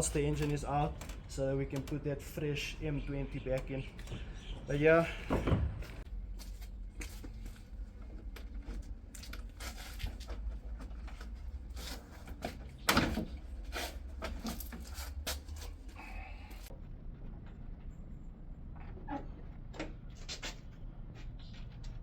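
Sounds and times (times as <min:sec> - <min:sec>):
car parts clicking and scraping: 0:07.0 - 0:15.9.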